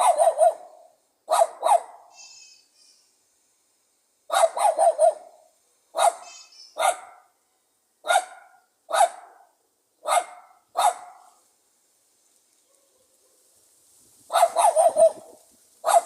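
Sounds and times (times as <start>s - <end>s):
dog barking sharply: 0.0s - 2.1s, 4.3s - 5.3s, 6.0s - 7.3s, 8.1s - 11.4s, 14.3s - 16.0s.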